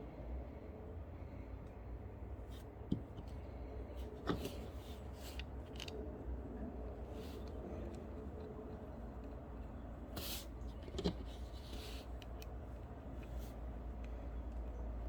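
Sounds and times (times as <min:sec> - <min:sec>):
mouthpiece parts scraping: 0:04.0 - 0:06.0, 0:10.1 - 0:12.6.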